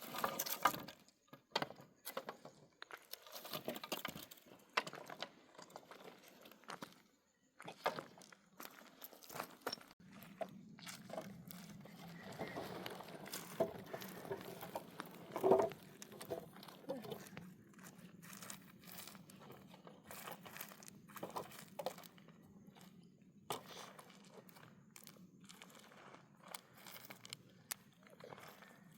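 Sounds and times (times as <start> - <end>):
crinkling crunching handling noises: 8.6 - 28.9.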